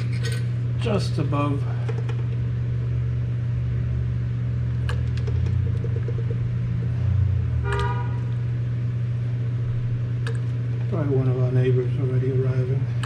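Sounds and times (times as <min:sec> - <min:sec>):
car horn toot: 0:07.6 - 0:08.3.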